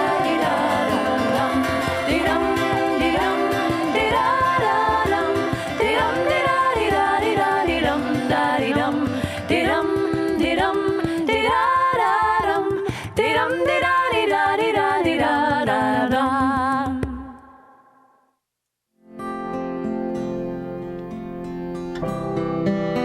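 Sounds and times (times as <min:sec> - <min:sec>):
voices singing in harmony: 0:00.0 - 0:17.6.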